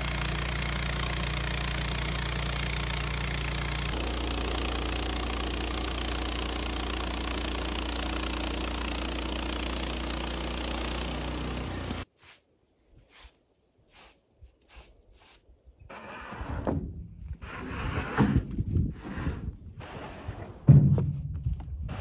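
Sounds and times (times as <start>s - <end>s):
sawmill running with low hum: 0.0s - 12.1s.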